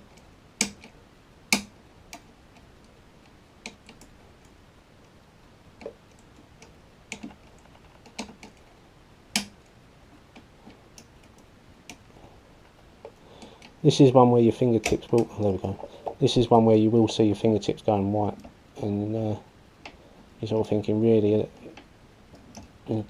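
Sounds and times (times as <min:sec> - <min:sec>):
lock pick metallic clicks: 0:00.0 - 0:02.7.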